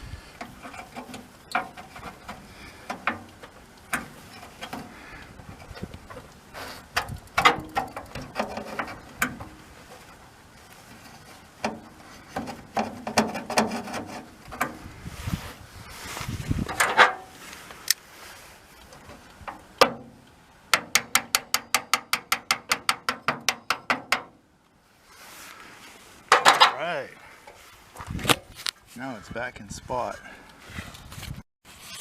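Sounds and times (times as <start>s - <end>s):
metal clunk: 0.4s - 10.2s, 16.7s - 17.3s, 19.0s - 24.4s, 26.3s - 26.8s
metal latch clicks and rattles: 6.9s - 9.5s, 16.7s - 17.2s.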